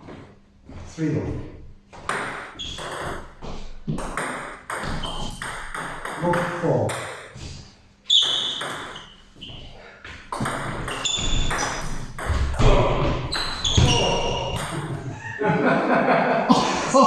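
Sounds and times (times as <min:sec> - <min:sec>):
table tennis ball hits: 0:02.0 - 0:07.4, 0:08.1 - 0:09.2, 0:10.3 - 0:15.0.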